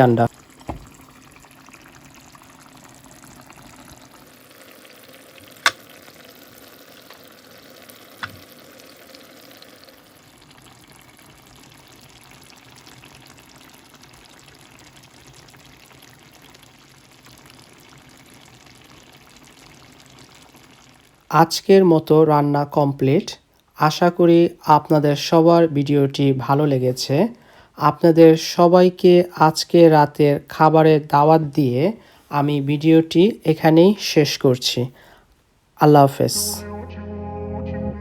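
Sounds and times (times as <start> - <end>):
curry sizzling and bubbling: 0.0 - 35.2
sharp knocks: 0.7 - 1.0.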